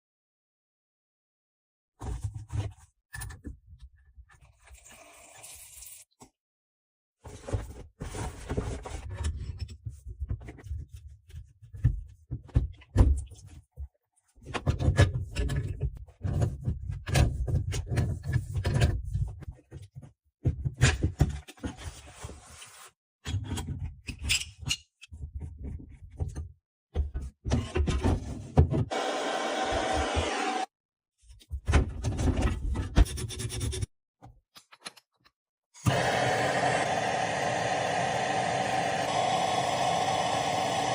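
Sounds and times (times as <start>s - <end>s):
handling knocks and scrapes: 7.2s - 24.0s.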